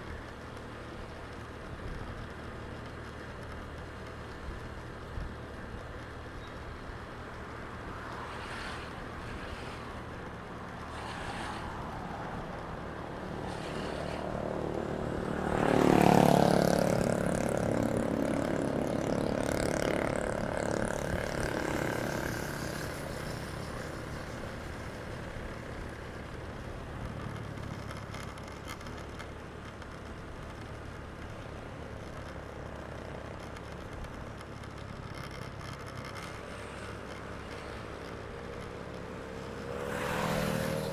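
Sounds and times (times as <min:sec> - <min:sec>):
road traffic: 0:00.0 - 0:40.9
vehicle passing close: 0:07.4 - 0:29.0, 0:34.5 - 0:40.9.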